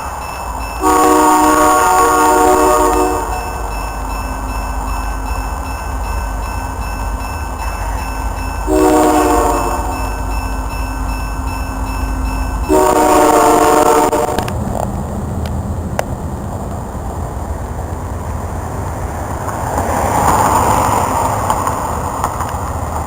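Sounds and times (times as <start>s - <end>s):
train rumbling: 0.0s - 23.0s
locomotive air horn: 0.8s - 3.6s, 8.7s - 10.1s, 12.7s - 14.5s.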